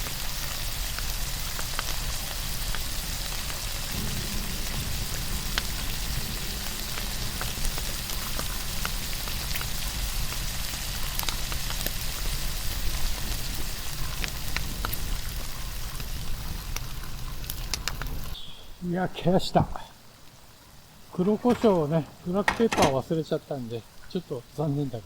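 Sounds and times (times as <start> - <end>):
steak sizzling: 0.0 - 18.4.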